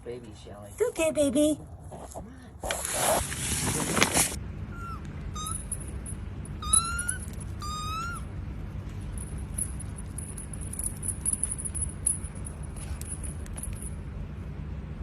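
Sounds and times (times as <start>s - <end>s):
kittens mewing: 4.7s - 8.4s.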